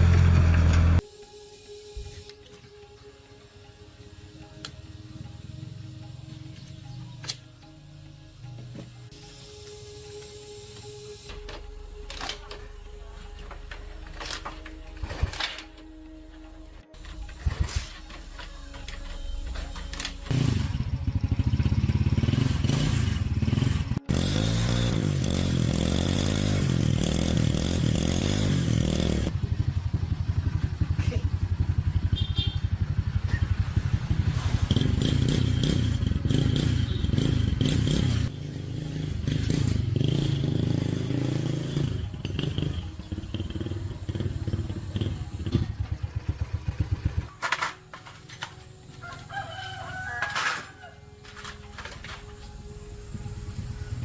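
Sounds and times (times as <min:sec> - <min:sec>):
motorcycle engine revving: 0:00.0 - 0:01.0, 0:19.7 - 0:47.6
rooster crowing: 0:49.0 - 0:51.2.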